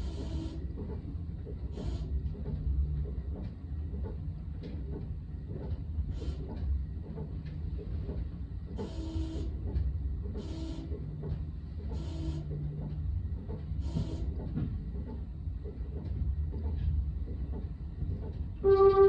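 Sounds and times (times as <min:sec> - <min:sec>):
electric train rumbling: 0:00.0 - 0:19.0
train horn short blasts: 0:18.6 - 0:19.0.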